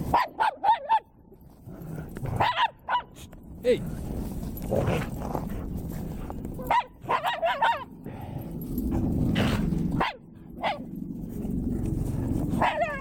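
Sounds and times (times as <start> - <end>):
dog barks: 0.1 - 1.1, 2.4 - 3.2, 6.6 - 7.9, 10.0 - 10.9, 12.6 - 13.0
low steady rumble: 1.2 - 13.0
dogs yipping and whining: 12.2 - 13.0.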